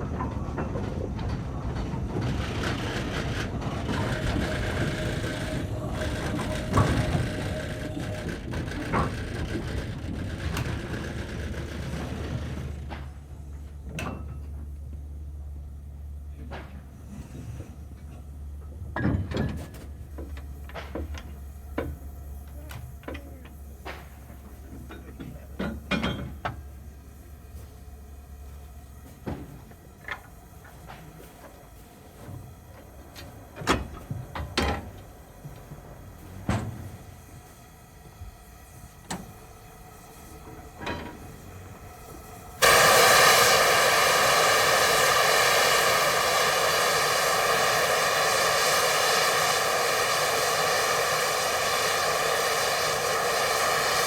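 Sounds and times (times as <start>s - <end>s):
steam crane rumble and hiss: 0.0s - 54.0s
low hum: 42.6s - 54.0s.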